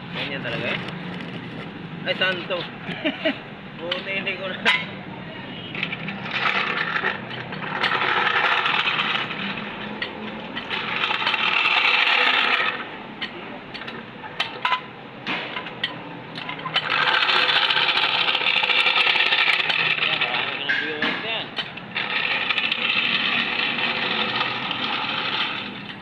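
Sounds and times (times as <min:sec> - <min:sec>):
power tool running: 0:10.6 - 0:12.9, 0:16.8 - 0:20.7, 0:21.9 - 0:26.0.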